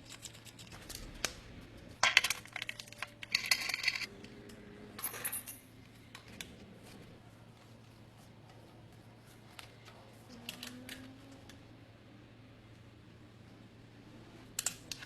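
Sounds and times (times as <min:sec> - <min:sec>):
small metal objects clinking: 0:02.0 - 0:04.1.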